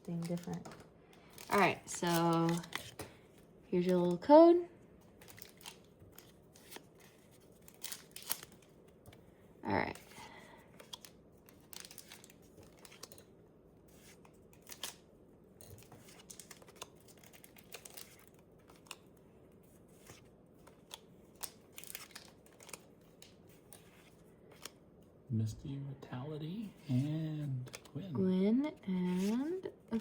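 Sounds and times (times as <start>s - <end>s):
trading cards clicking and rustling: 0.0s - 4.2s, 5.1s - 9.2s, 9.9s - 19.2s, 19.8s - 24.8s, 26.8s - 28.1s.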